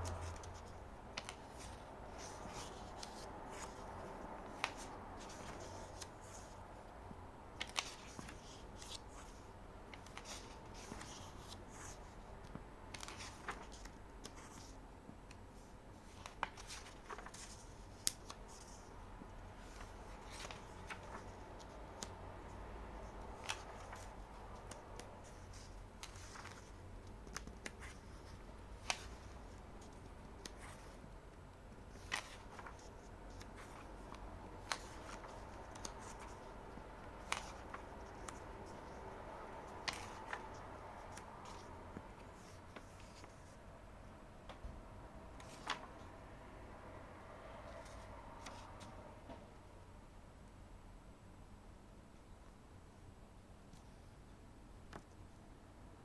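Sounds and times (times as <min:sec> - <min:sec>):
paper pages rustling: 0:00.0 - 0:06.6, 0:07.6 - 0:18.9, 0:19.6 - 0:22.1, 0:23.0 - 0:31.1, 0:31.7 - 0:43.6, 0:45.4 - 0:46.1, 0:47.7 - 0:48.9
faint low hum: 0:00.0 - 0:56.0.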